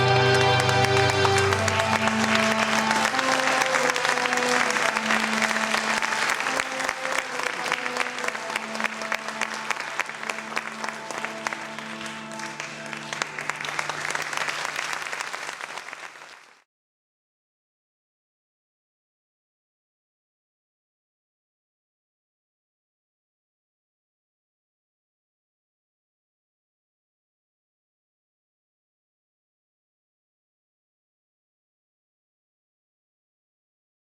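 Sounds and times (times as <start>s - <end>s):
music playing a melody: 0.0s - 14.8s
audience applauding: 0.0s - 16.6s.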